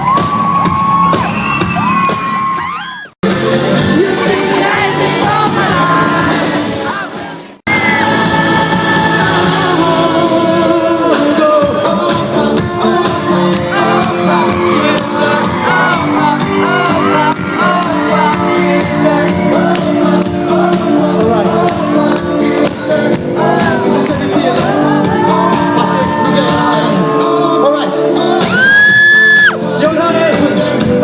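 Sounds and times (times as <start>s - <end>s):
audience shouting and whooping: 0.0s - 3.2s, 13.6s - 20.3s, 24.7s - 27.0s, 28.4s - 29.6s
loud live pop music: 0.0s - 31.0s
audience singing: 3.5s - 28.6s.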